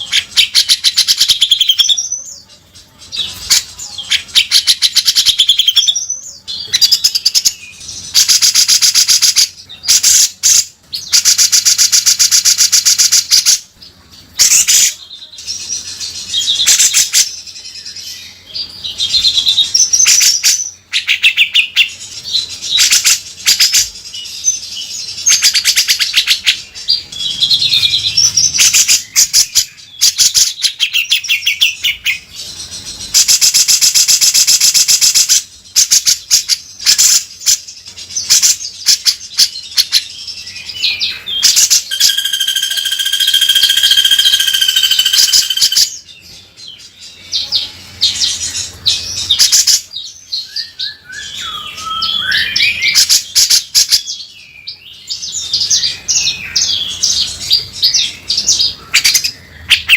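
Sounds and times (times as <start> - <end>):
bird whistled notes: 41.4 - 45.9, 50.4 - 53.1
bird rattling chatter: 41.9 - 45.8.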